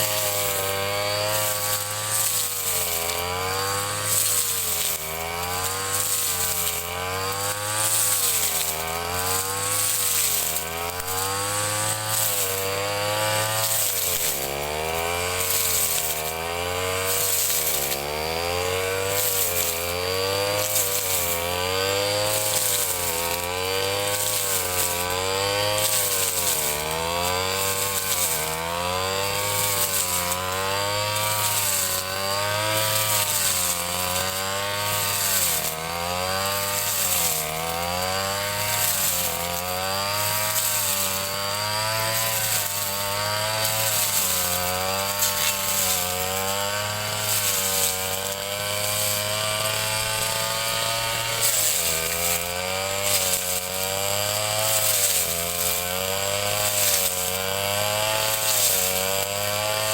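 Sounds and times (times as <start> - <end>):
brush cutter engine cutting grass: 0.0 - 59.9.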